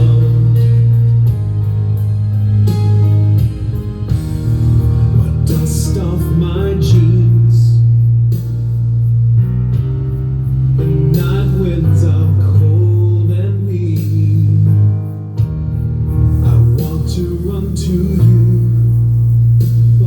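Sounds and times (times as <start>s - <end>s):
guitar-led song: 0.0s - 20.0s.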